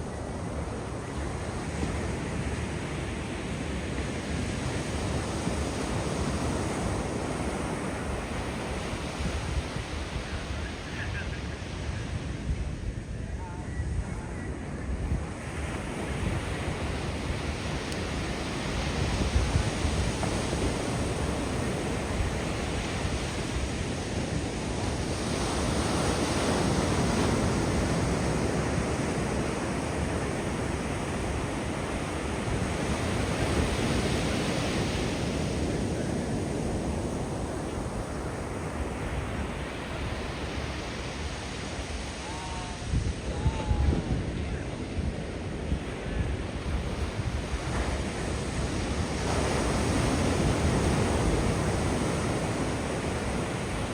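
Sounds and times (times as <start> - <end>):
ocean surf breaking: 0.0 - 53.9
wind on microphone: 0.0 - 53.9.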